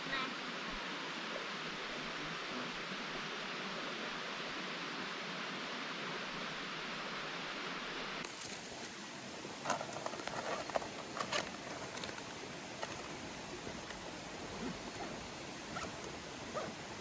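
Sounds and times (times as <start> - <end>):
steady rushing hiss: 0.0 - 17.0
quiet rustling: 8.2 - 17.0
sharp clicks and scrapes: 9.6 - 16.7.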